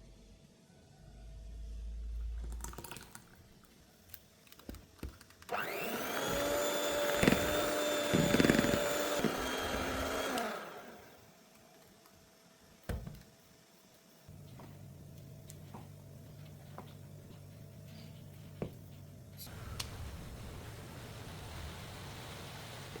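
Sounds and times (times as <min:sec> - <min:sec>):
electric mixer whirring: 0:05.5 - 0:11.2.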